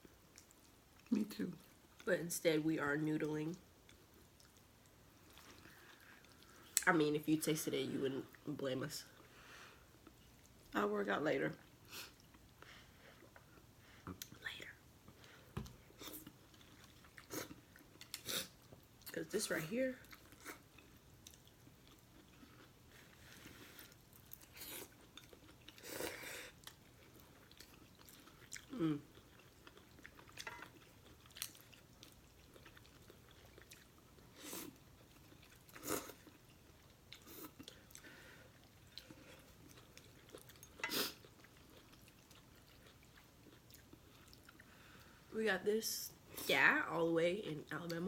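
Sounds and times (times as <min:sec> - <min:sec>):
chewing noodles: 0:15.9 - 0:19.1, 0:20.0 - 0:45.1.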